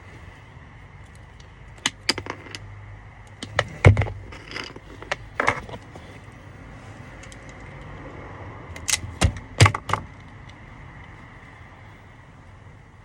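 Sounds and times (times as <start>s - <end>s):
steady low hum: 0.0s - 13.0s
small tools clicking and clattering: 3.3s - 6.2s.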